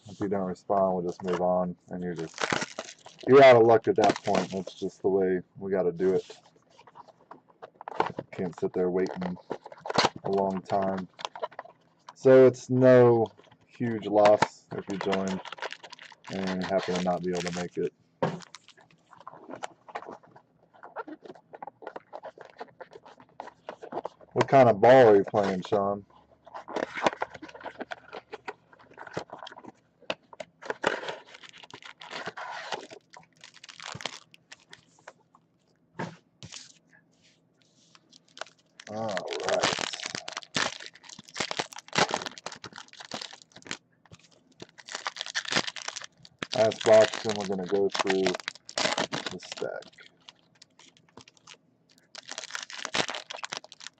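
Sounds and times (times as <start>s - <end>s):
wrappers crinkling and tearing: 2.1s - 4.8s, 7.8s - 12.3s, 13.8s - 17.8s, 18.4s - 25.8s, 30.6s - 35.0s, 37.9s - 53.9s.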